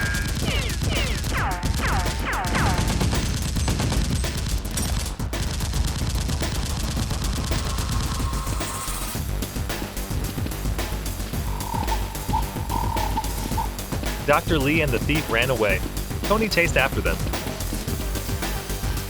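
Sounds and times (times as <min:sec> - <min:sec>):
rapid gunfire: 0:00.0 - 0:08.2
falling whistling sounds: 0:11.3 - 0:14.3.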